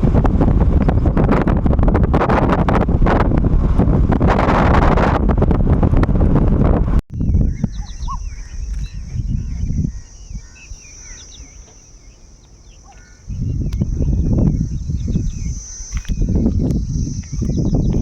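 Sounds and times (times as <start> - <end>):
wind buffeting microphone: 0.0 - 18.0
bird chirps: 7.1 - 18.0
high insect drone: 7.2 - 18.0.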